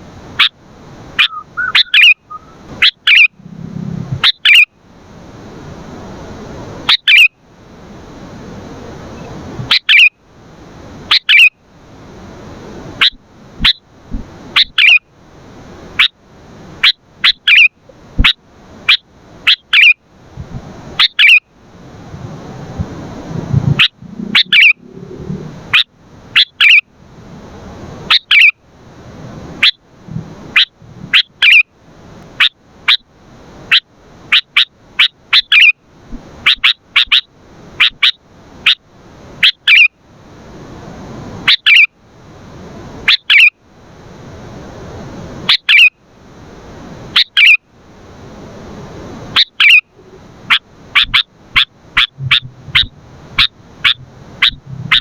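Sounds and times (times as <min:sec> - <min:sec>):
bulbul short sharp calls: 0:01.2 - 0:03.4, 0:50.5 - 0:55.0.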